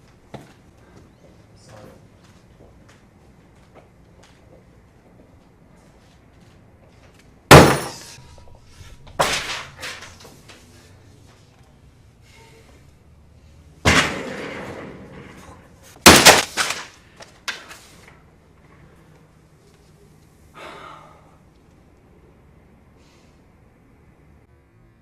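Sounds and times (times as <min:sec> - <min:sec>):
loud crashes and bangs: 0:07.5 - 0:08.0, 0:13.9 - 0:15.4
things breaking: 0:07.5 - 0:08.1, 0:16.0 - 0:17.0.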